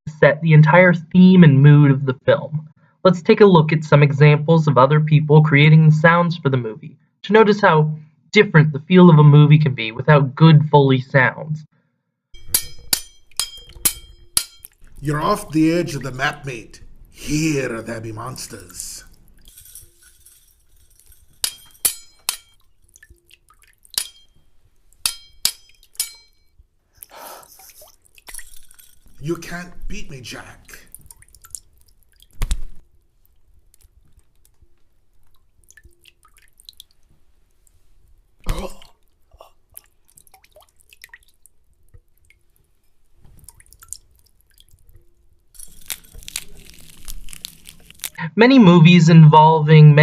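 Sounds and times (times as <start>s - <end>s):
sword blades clashing: 12.4s - 14.7s, 21.4s - 22.6s, 25.1s - 26.4s
water drips plinking: 12.4s - 16.6s, 21.4s - 26.6s, 27.6s - 29.8s, 30.7s - 37.2s, 38.4s - 48.2s.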